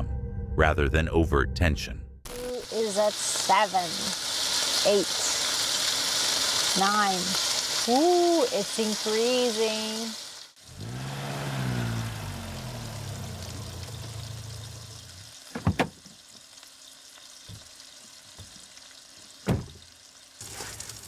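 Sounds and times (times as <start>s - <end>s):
food sizzling in a pan: 2.3s - 21.0s
car engine humming: 10.6s - 15.2s.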